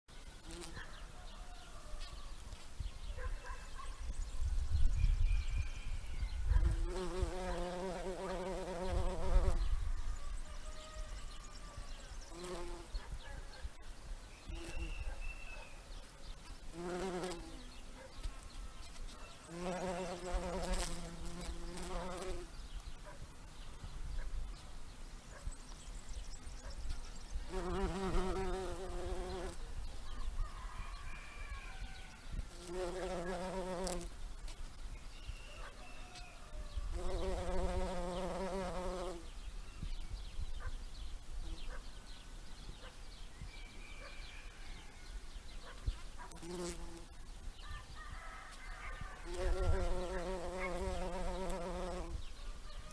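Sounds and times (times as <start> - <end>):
bumblebee buzzing: 0.4 - 0.9, 6.4 - 9.7, 12.3 - 13.0, 14.5 - 15.3, 16.6 - 18.2, 19.5 - 22.6, 26.3 - 29.7, 32.4 - 34.2, 36.9 - 39.3, 46.2 - 47.1, 49.2 - 52.3
faint bird chirps: 9.3 - 20.0.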